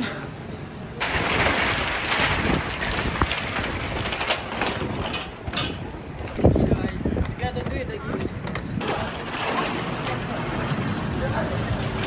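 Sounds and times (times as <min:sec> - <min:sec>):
hubbub of busy train station: 0:00.0 - 0:01.1, 0:04.8 - 0:12.0.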